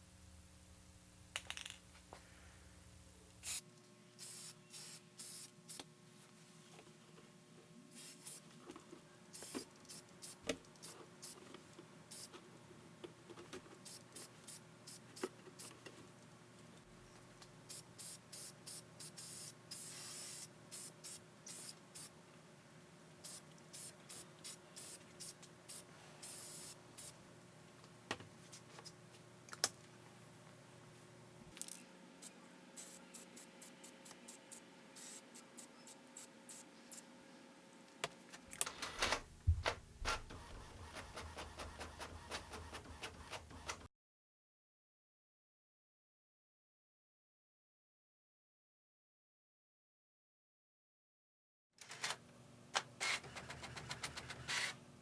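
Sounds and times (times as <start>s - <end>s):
short hissing bursts: 3.4s - 3.6s, 4.2s - 5.8s, 8.0s - 8.4s, 17.7s - 22.1s, 32.2s - 37.0s.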